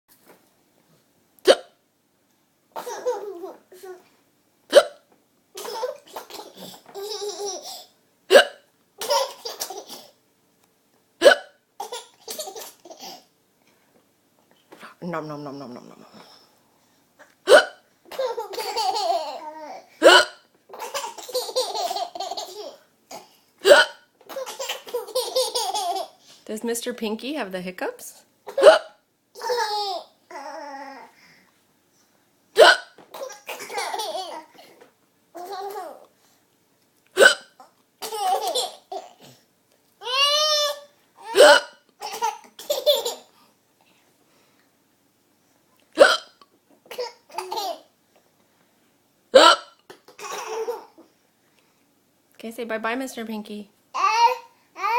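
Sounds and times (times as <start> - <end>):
loud sharp hiccups: 1.4 - 1.8, 4.7 - 5.1, 8.3 - 8.7, 11.2 - 11.6, 17.4 - 17.9, 20.0 - 20.5, 23.6 - 24.1, 28.5 - 29.0, 32.6 - 33.0, 37.2 - 37.6, 41.3 - 41.8, 46.0 - 46.4, 49.3 - 49.9.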